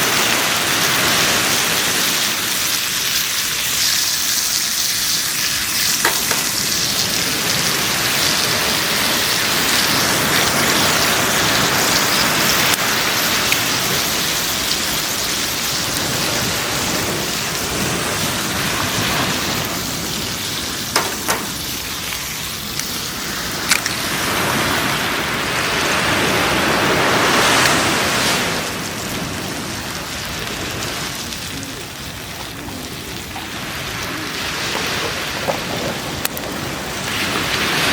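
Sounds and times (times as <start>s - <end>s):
bacon and eggs sizzling in a pan: 0.0s - 37.9s.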